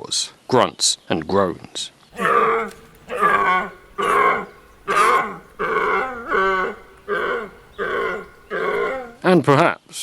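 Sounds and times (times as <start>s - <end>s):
deer roaring and grunting: 2.2s - 9.2s.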